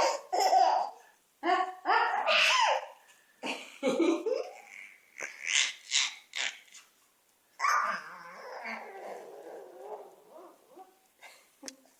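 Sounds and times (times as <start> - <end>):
baby laughing: 0.0 - 1.0, 4.0 - 6.7.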